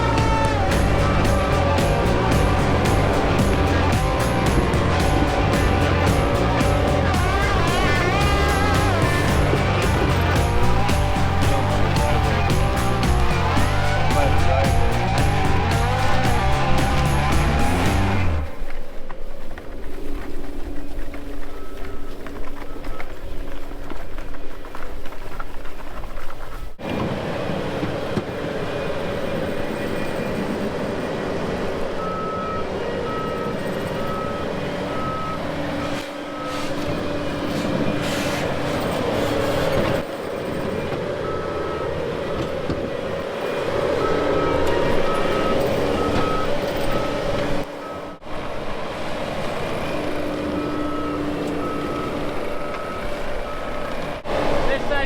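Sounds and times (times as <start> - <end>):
diesel engine running: 0.0 - 18.7, 26.8 - 55.0
backup alarm beeping: 29.7 - 48.3, 49.5 - 54.2.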